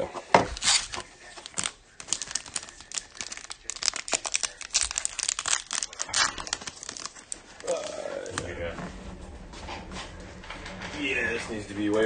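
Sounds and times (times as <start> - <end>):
card pack wrappers crinkling: 0.5 - 8.5.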